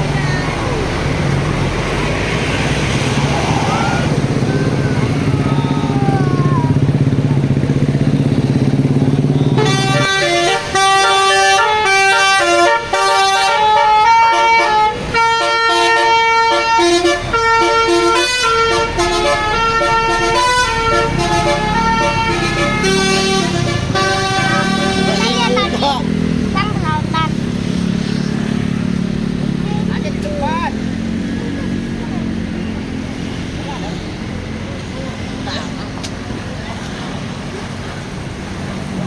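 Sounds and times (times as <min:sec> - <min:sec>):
bus diesel engine humming: 0:00.0 - 0:39.0
multi-tone horn melody: 0:07.1 - 0:27.5.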